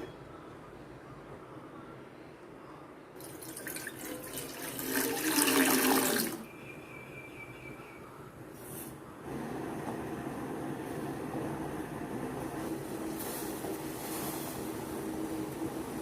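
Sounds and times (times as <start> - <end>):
water pouring into a pan: 3.2 - 6.4.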